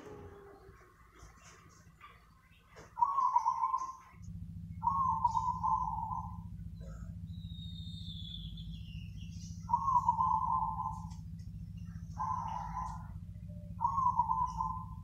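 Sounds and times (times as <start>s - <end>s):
dove cooing: 0.0s - 1.8s, 2.8s - 4.2s, 4.8s - 7.3s, 9.5s - 15.0s
low steady hum: 0.0s - 15.0s.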